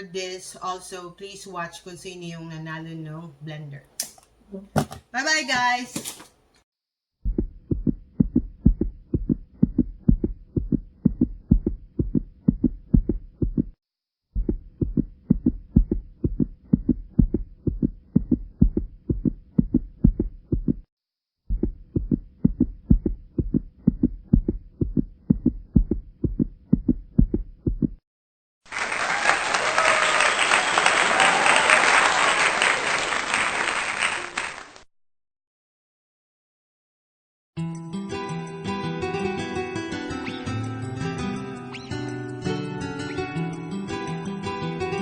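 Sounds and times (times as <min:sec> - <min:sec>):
heartbeat thumps: 0:07.2 - 0:13.8, 0:14.4 - 0:20.9, 0:21.5 - 0:28.0
applause: 0:28.7 - 0:34.9.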